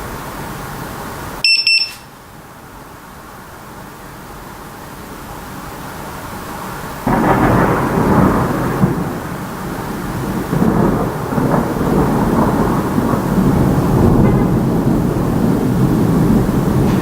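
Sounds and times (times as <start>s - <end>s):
thunder crack and rumble: 7.0s - 17.0s.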